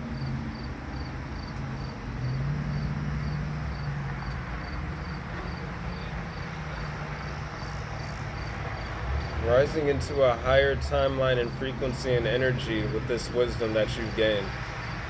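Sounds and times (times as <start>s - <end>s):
cricket chirping: 0.2s - 9.7s.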